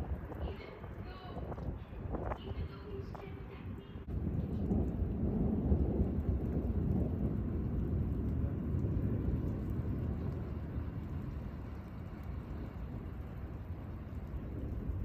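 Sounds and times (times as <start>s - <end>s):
rolling thunder: 4.0s - 15.0s.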